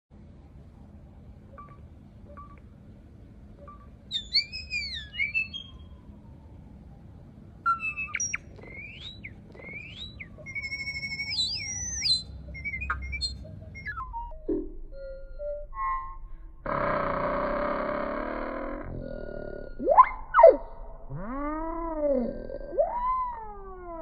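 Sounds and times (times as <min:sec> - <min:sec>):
songbird singing whistled phrases: 0:03.7 - 0:05.9, 0:07.6 - 0:14.3.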